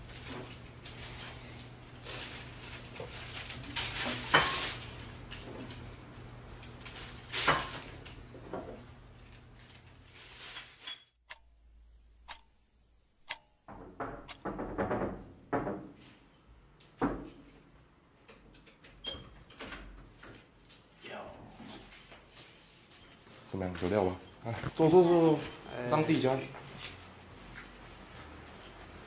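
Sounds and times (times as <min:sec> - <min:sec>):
clatter of household objects: 0:00.0 - 0:11.1
sharp clicks: 0:12.2 - 0:12.6, 0:13.2 - 0:13.6.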